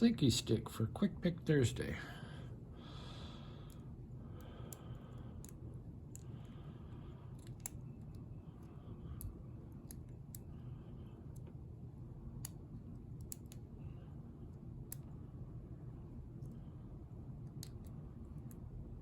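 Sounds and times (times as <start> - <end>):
light pin clicks: 12.4 - 13.6.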